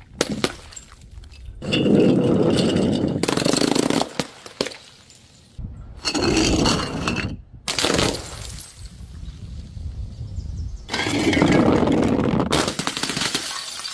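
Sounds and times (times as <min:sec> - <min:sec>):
bottles smashing: 0:01.6 - 0:05.1, 0:12.6 - 0:13.9.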